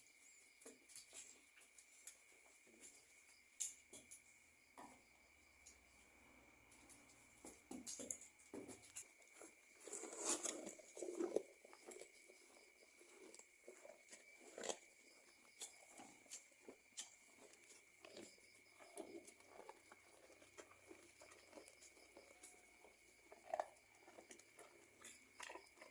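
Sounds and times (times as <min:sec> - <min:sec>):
cattle eating feed: 0:06.7 - 0:25.9.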